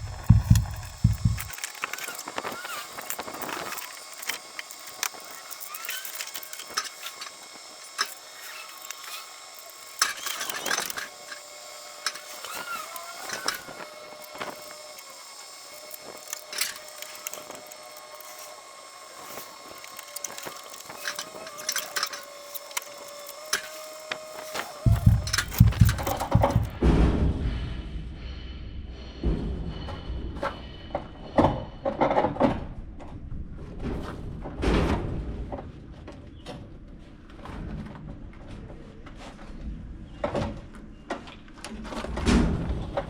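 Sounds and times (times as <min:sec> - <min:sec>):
heavy cabinet knocking and clunking: 0:00.0 - 0:01.5.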